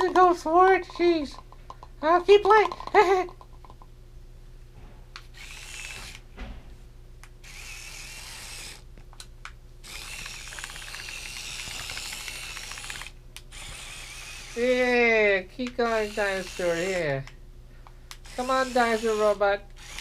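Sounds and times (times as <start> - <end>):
toy robot motors whirring: 0.0 - 1.4, 2.2 - 3.8, 5.3 - 6.2, 7.4 - 8.8, 9.8 - 15.0, 15.6 - 17.3, 18.1 - 20.0.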